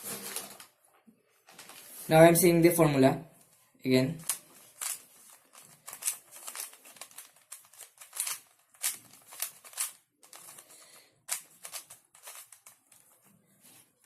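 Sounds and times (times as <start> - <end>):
puzzle cube clicking: 4.2 - 12.8.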